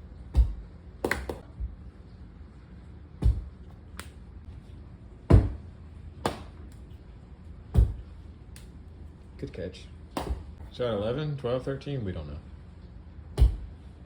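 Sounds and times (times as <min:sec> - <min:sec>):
ball bouncing on hard surfaces: 0:00.4 - 0:01.7, 0:03.2 - 0:04.1, 0:05.3 - 0:06.7, 0:07.8 - 0:08.1, 0:10.2 - 0:10.6, 0:13.4 - 0:13.7.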